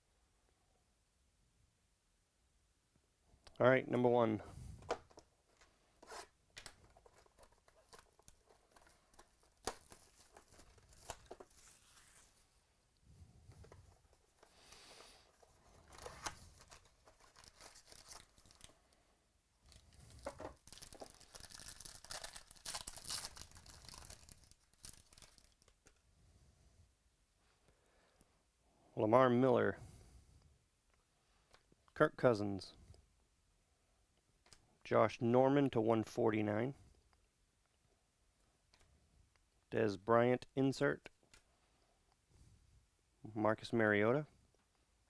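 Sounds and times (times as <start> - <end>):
wrapper tearing and crinkling: 6.6 - 12.3, 15.7 - 18.8, 19.6 - 26.0
small clicks and rustles: 6.6 - 12.4.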